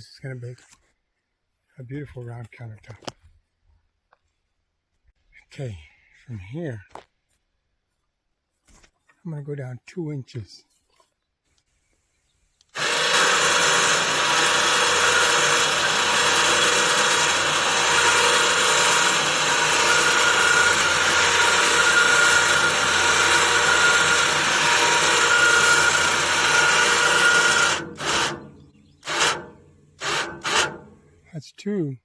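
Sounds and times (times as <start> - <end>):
electric motor whining: 12.8 - 31.2.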